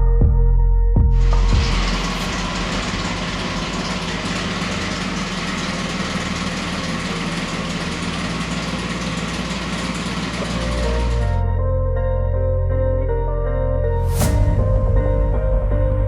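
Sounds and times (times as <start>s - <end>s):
car engine idling: 1.2s - 11.5s.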